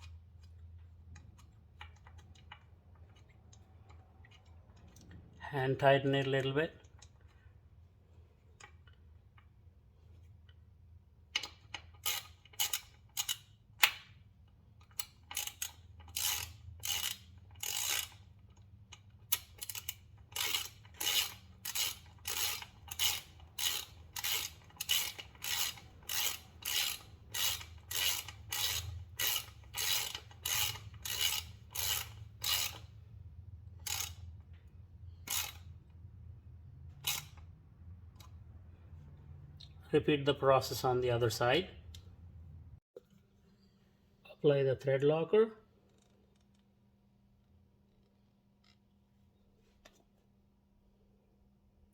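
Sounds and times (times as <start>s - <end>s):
ratchet wrench clicking: 11.3s - 14.0s, 14.8s - 33.0s, 33.7s - 34.5s, 35.2s - 36.0s, 37.0s - 37.5s.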